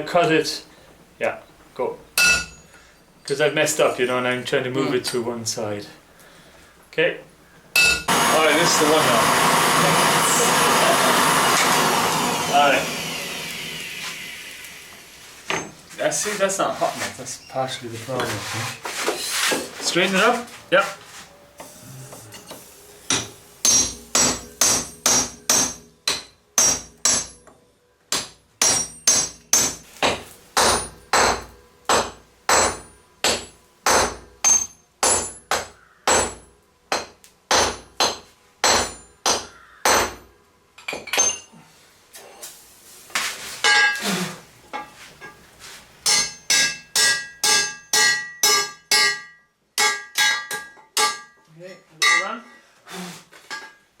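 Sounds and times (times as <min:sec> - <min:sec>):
anvil ringing: 0:02.2 - 0:02.7, 0:07.8 - 0:08.2, 0:23.1 - 0:27.5, 0:28.1 - 0:29.8, 0:43.7 - 0:44.0, 0:46.0 - 0:51.4, 0:52.0 - 0:52.4
hammer striking hot steel: 0:02.2 - 0:02.7, 0:07.7 - 0:14.8, 0:21.6 - 0:40.2, 0:43.6 - 0:44.0, 0:46.0 - 0:51.4, 0:52.0 - 0:52.3.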